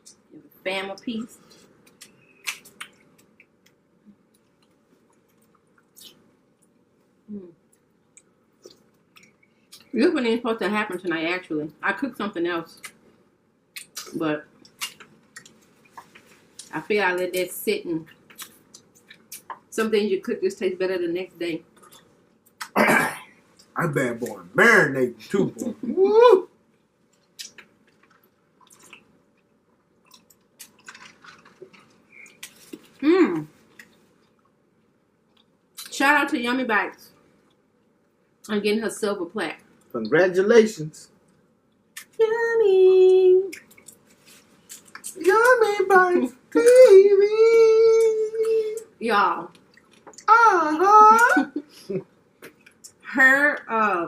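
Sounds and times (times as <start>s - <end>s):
wet chewing and mouth smacks: 1.6s - 6.8s, 7.7s - 9.9s, 13.7s - 16.7s, 18.1s - 19.7s, 27.1s - 33.0s, 43.5s - 45.3s, 49.5s - 50.3s
chewing with wet squishes: 27.1s - 33.0s, 43.5s - 45.3s, 49.5s - 50.3s.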